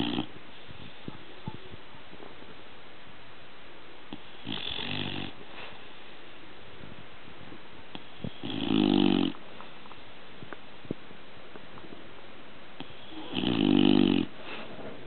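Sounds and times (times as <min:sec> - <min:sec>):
dog snoring: 0:00.0 - 0:00.3, 0:04.1 - 0:05.4, 0:08.0 - 0:09.4, 0:12.8 - 0:14.4.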